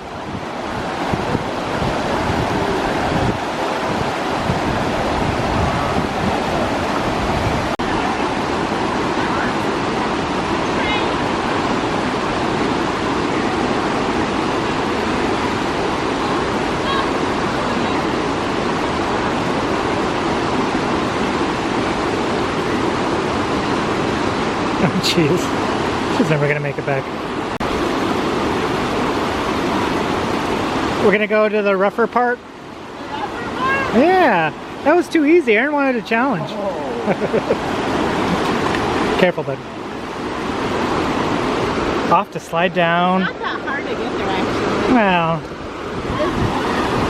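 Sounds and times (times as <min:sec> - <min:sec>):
wind buffeting microphone: 0:00.0 - 0:26.2, 0:43.3 - 0:47.0
river rushing over rapids: 0:00.0 - 0:47.0.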